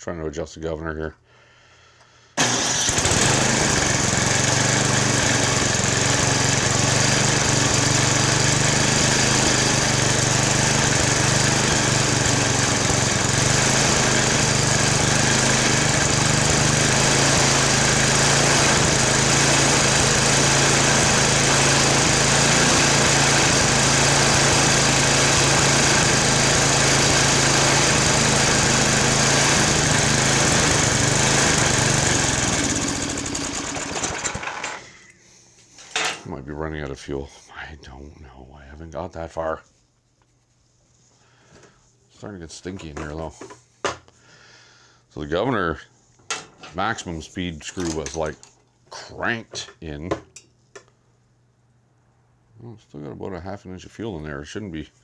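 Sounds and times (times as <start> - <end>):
small gasoline engine running: 2.4 - 34.8.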